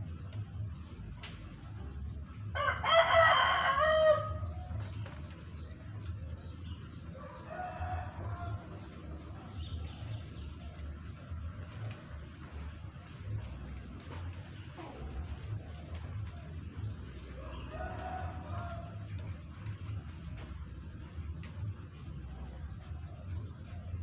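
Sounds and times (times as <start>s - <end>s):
rain: 0.0s - 24.0s
rooster crowing: 2.6s - 4.7s, 7.2s - 8.8s, 17.4s - 19.3s.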